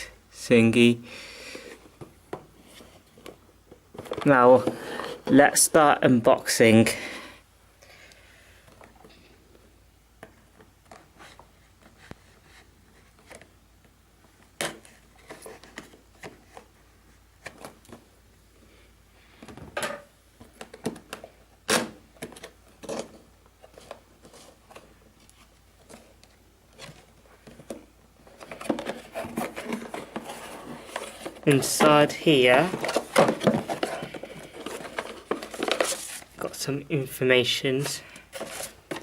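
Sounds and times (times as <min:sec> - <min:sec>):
packaging rustling: 0:20.5 - 0:36.6, 0:37.8 - 0:39.0.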